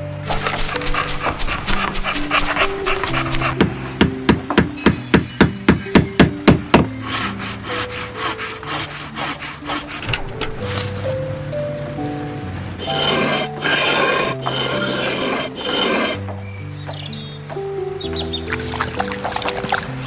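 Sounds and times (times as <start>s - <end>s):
scratchy rubbing and clicking: 0.0s - 3.6s, 7.0s - 16.2s, 18.5s - 20.0s
soft background music: 0.0s - 20.0s.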